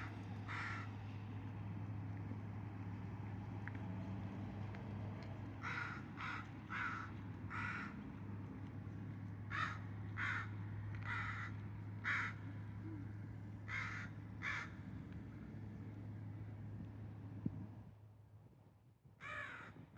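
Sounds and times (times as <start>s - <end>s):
crow cawing: 0.0s - 0.9s, 5.6s - 8.0s, 9.5s - 13.1s, 13.7s - 14.8s, 19.2s - 19.8s.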